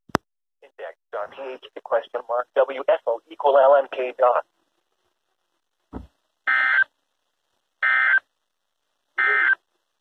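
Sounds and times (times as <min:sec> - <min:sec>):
low thump: 0:05.9 - 0:06.2.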